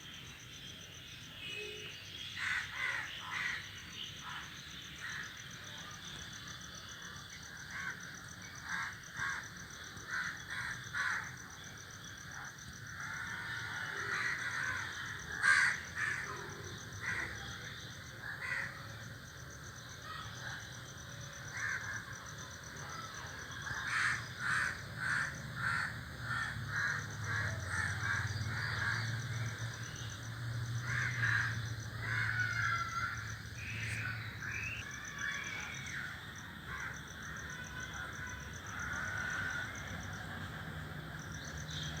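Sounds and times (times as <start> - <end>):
crows cawing: 2.4 - 3.6, 8.6 - 11.3, 13.0 - 17.4, 18.2 - 18.8, 21.5 - 22.1, 23.0 - 29.4, 30.8 - 36.1, 36.7 - 40.2.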